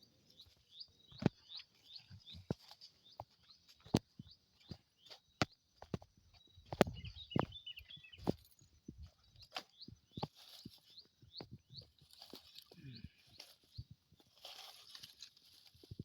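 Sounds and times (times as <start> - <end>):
footsteps crunching through vegetation: 0.4 - 16.0
high chirping: 6.3 - 13.9.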